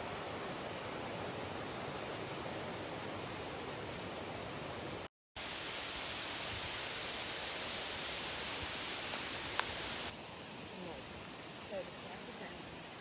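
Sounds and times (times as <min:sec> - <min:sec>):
waterfall rushing: 0:05.4 - 0:10.1
faint high whine: 0:05.4 - 0:10.2.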